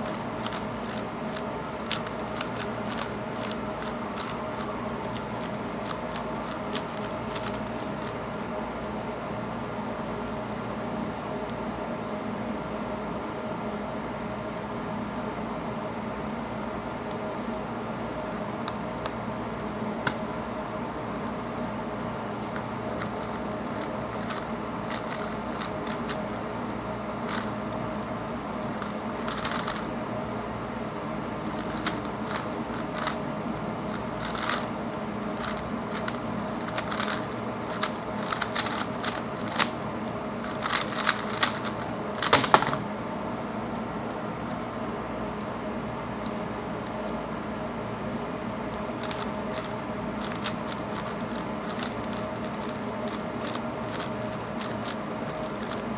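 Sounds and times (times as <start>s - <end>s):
puzzle cube plastic clicks: 0.0s - 8.2s, 22.6s - 30.0s, 31.4s - 33.3s, 33.9s - 42.9s, 48.7s - 55.9s
air conditioner hum: 0.0s - 55.9s.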